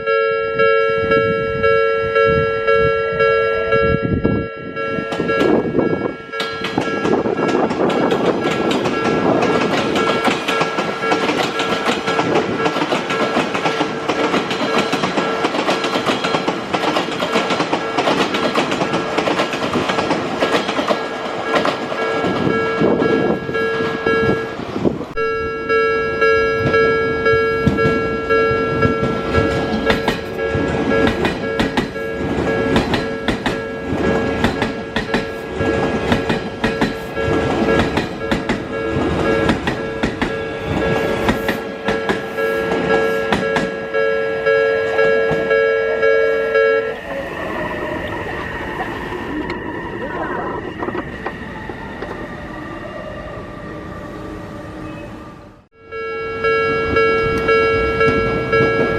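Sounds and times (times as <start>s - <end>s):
level crossing bell ringing: 0.0s - 7.7s, 21.0s - 24.6s, 25.2s - 35.9s, 36.8s - 47.1s, 55.8s - 58.9s
train wheels clattering on rails: 5.1s - 24.4s, 26.6s - 44.0s, 44.8s - 45.7s.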